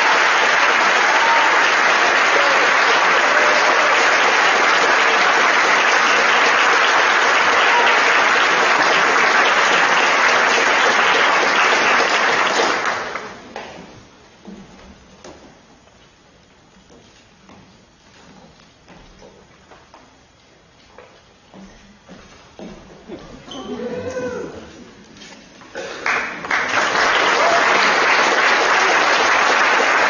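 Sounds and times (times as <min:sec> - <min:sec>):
audience applauding: 0:00.0 - 0:13.6, 0:25.8 - 0:30.0.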